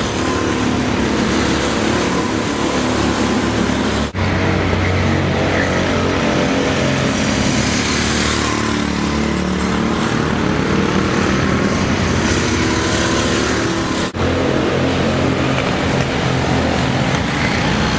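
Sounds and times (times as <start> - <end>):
go-kart engine running: 0.0 - 17.9.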